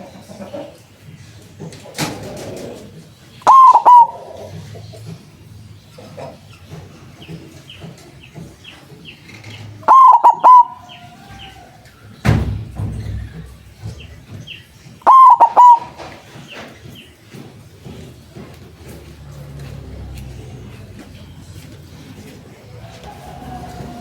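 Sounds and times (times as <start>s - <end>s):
dove cooing: 1.7s - 11.9s, 13.2s - 17.2s
thump: 12.2s - 14.0s.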